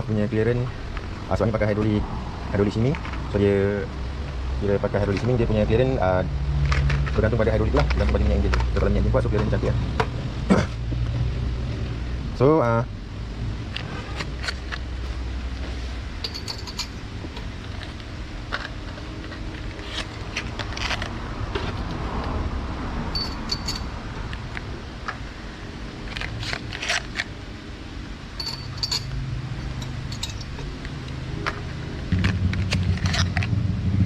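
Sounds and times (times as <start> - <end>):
low steady hum: 0.0 - 34.0
metal tools clinking: 16.2 - 17.1, 23.1 - 24.0, 28.4 - 30.7, 32.7 - 33.5.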